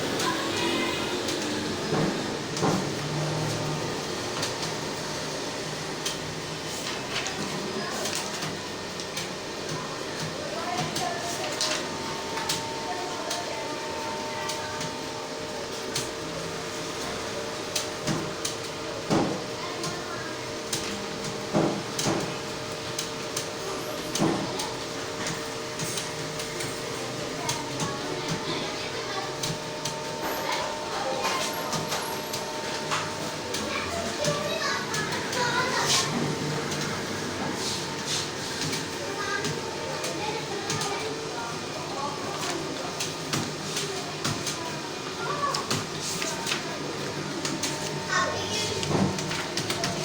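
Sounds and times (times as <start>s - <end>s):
steady room hum: 0.0s - 50.0s.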